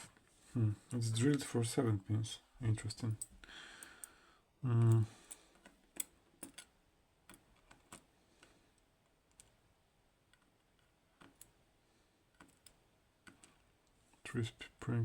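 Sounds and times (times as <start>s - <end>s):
small metal clicks of lock parts: 3.1s - 4.2s, 4.8s - 9.6s, 10.3s - 11.6s, 12.3s - 13.6s.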